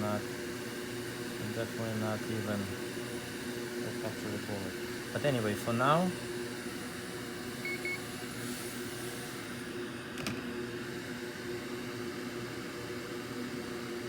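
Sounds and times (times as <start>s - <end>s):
fume extractor fan whirring: 0.0s - 14.0s
short high beeps: 7.7s - 8.0s.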